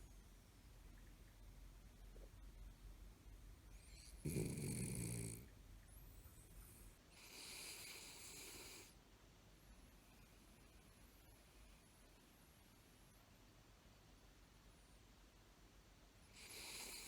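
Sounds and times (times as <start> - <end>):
dog snoring: 3.8 - 5.5, 6.6 - 8.9, 16.3 - 17.0.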